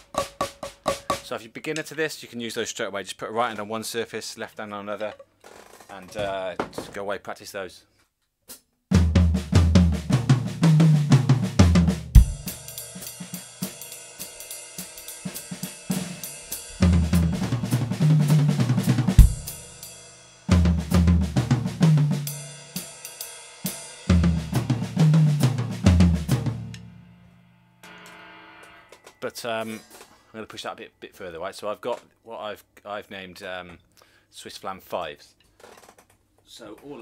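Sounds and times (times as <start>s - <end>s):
drum fills on toms: 0.0s - 1.4s, 8.9s - 23.0s, 23.6s - 26.9s
bass drum hits: 8.9s - 12.5s, 16.8s - 19.6s.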